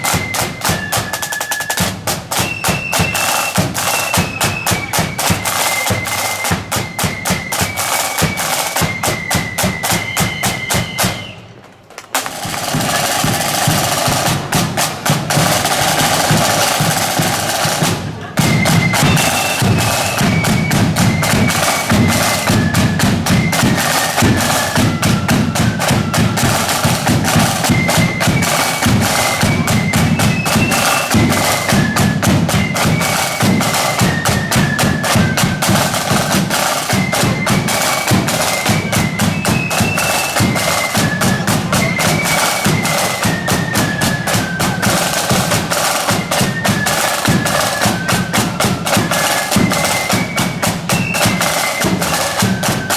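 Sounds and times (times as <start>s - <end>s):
snare drumming: 0.0s - 11.4s, 12.0s - 52.9s
marching band playing: 0.0s - 52.9s.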